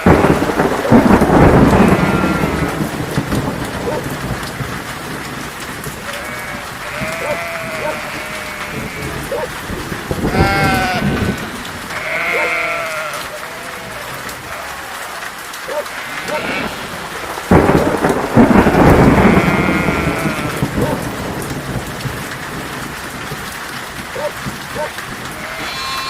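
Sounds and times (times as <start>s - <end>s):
sheep bleating: 0.0s - 0.9s, 1.5s - 2.9s, 6.0s - 9.5s, 10.3s - 17.1s, 18.4s - 21.0s, 25.3s - 26.0s
thunder rumble: 0.0s - 15.2s, 15.9s - 26.0s
steady rain: 0.0s - 26.0s.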